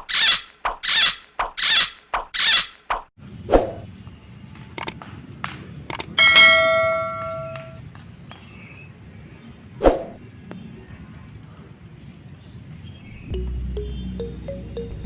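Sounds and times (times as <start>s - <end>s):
metallic bell-like ding: 6.2s - 7.8s.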